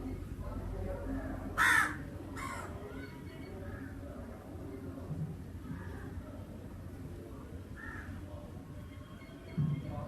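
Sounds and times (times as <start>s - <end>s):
crow calls: 1.6s - 3.0s, 7.8s - 8.2s
faint high chirps: 8.7s - 10.0s.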